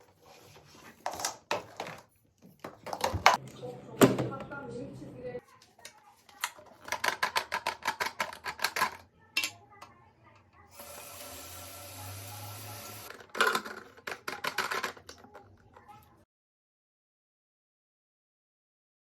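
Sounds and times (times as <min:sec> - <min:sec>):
washing machine motor hum: 0:10.7 - 0:13.1.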